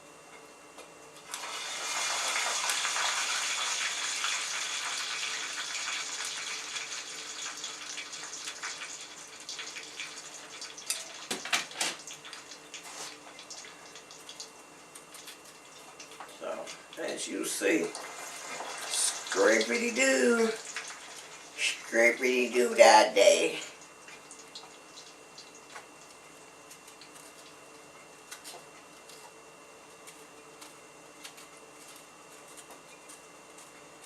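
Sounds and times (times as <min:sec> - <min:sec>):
water running from tap into sink: 0:01.3 - 0:12.6, 0:17.8 - 0:21.6.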